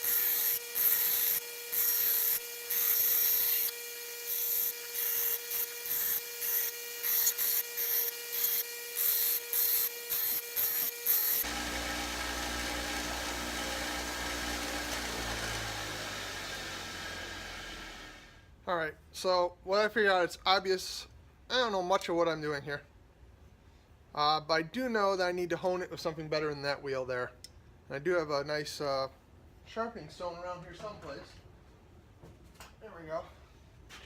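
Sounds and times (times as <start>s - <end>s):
knife grinding on wheel: 4.3s - 16.1s
grinder motor hum: 10.2s - 18.4s.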